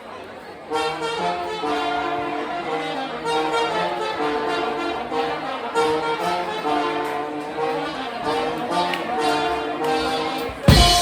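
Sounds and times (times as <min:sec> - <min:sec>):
live band playing: 0:08.3 - 0:11.0.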